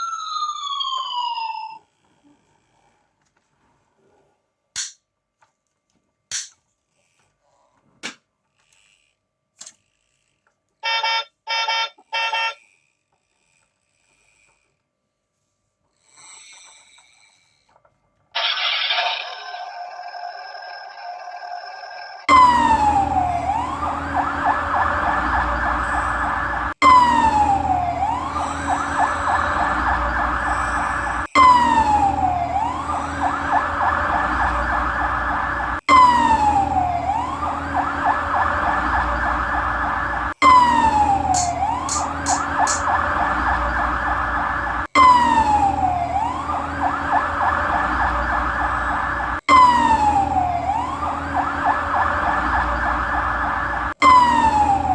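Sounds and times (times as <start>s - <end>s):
toy fire truck siren: 0.0s - 2.4s, 10.8s - 12.8s, 18.4s - 54.9s.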